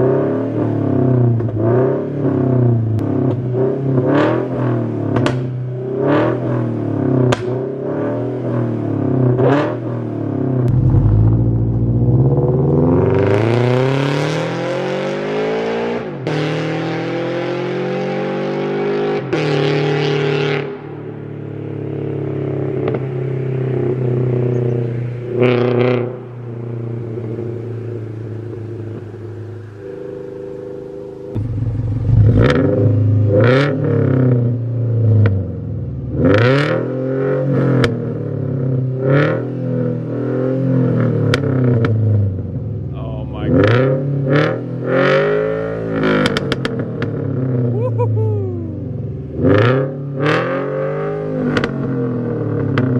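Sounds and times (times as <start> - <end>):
car engine revving and idling: 0.0 - 20.8, 21.5 - 52.9
quick engine rev blips: 10.7 - 13.3.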